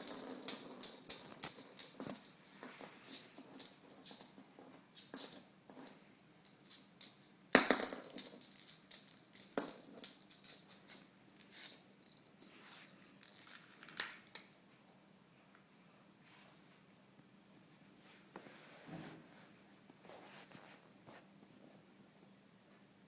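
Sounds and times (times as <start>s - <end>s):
toy ball rattling: 0.0s - 14.6s.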